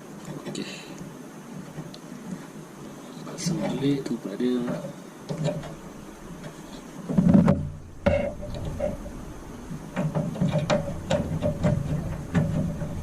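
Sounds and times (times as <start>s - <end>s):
heavy thump: 7.1s - 13.0s.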